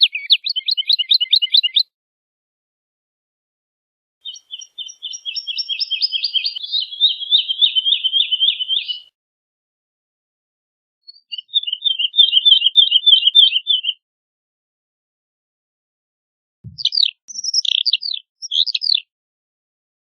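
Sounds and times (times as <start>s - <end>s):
bird singing: 0.0s - 1.9s, 4.2s - 9.1s, 11.1s - 14.0s, 16.7s - 19.1s.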